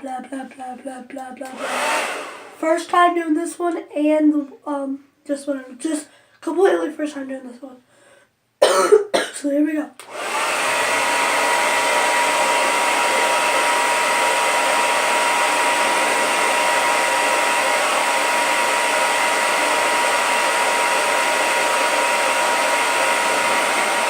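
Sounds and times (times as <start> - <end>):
hair dryer blowing: 1.4 - 2.8, 10.0 - 24.0.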